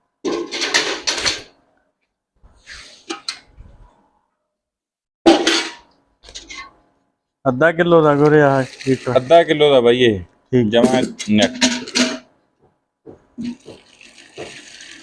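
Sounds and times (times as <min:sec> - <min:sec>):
metal pail clanking: 0:00.2 - 0:01.5, 0:05.3 - 0:06.8, 0:10.8 - 0:12.3.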